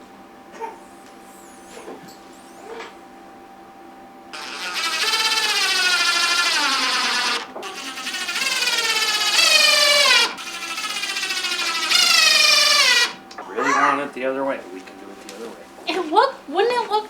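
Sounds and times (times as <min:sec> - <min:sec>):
young child crying: 0:00.5 - 0:00.8, 0:13.4 - 0:14.1.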